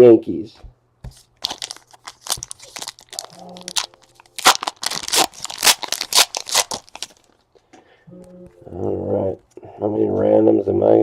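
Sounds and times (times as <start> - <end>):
card pack wrapper tearing and crinkling: 1.4 - 7.4.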